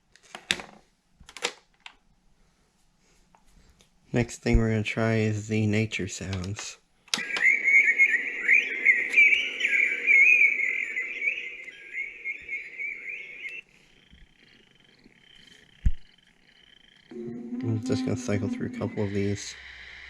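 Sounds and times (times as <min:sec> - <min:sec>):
recorded birdsong from speaker: 0:04.4 - 0:13.6, 0:17.8 - 0:19.6
low hum: 0:07.2 - 0:20.0.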